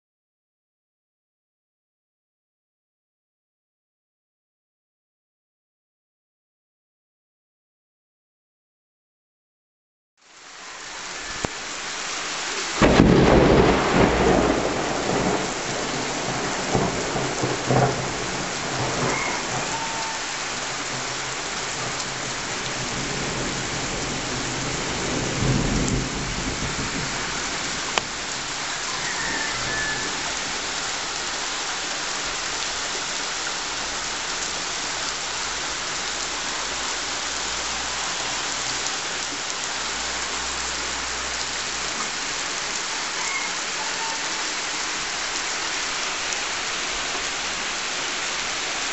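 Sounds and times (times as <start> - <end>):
heavy rain pouring: 10.2 - 48.9
thunder rumbling: 12.8 - 20.2, 20.8 - 28.6.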